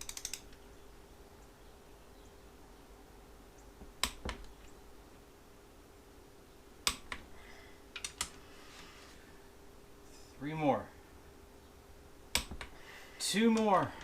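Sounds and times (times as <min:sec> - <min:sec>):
torque wrench clicking: 0:00.0 - 0:00.5.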